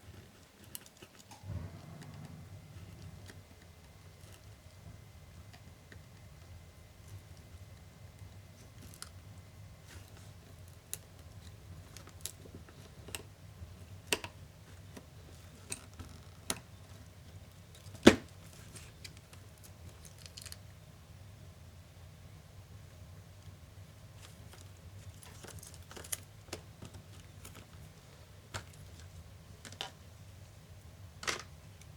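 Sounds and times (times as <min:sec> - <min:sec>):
faint low steady hum: 0:00.0 - 0:31.9
laptop parts and tools clicking: 0:31.2 - 0:31.9.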